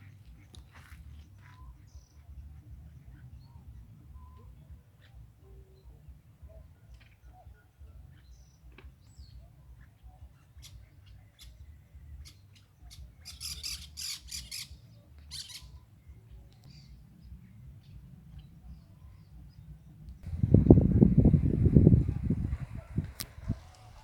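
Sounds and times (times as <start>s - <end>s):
low steady rumble: 16.1s - 24.0s.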